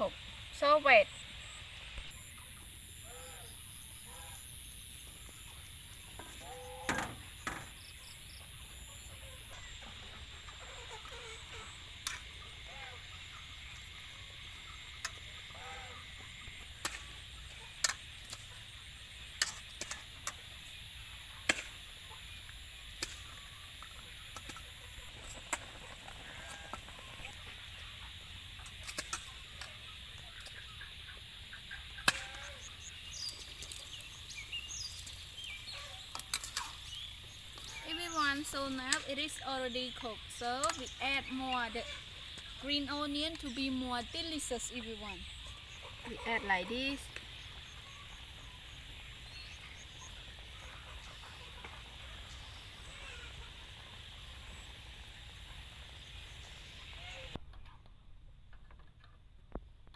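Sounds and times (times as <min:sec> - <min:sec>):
chickens clucking: 0:08.3 - 0:18.8, 0:23.0 - 0:34.1, 0:44.6 - 0:48.4, 0:50.0 - 0:54.8.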